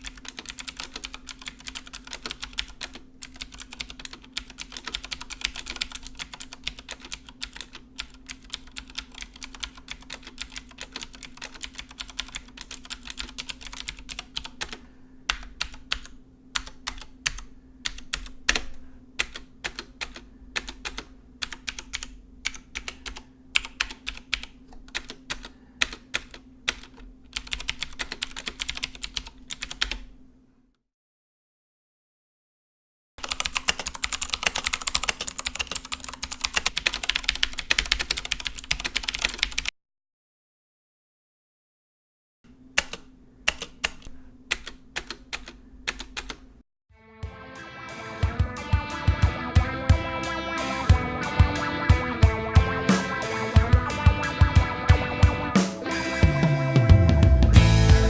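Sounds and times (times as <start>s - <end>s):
mechanical keyboard typing: 0.0s - 30.1s, 33.2s - 39.7s, 42.8s - 46.4s.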